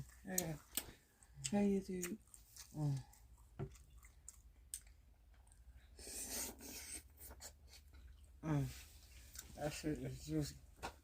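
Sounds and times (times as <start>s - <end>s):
person chewing: 0.0s - 8.4s.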